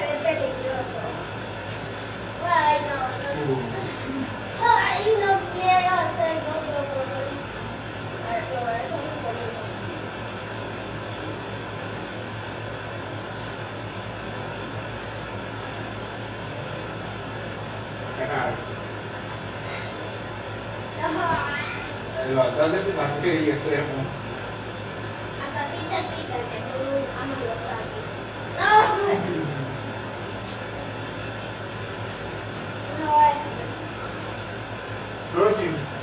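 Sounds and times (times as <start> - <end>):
room noise hiss: 0.0 - 36.0.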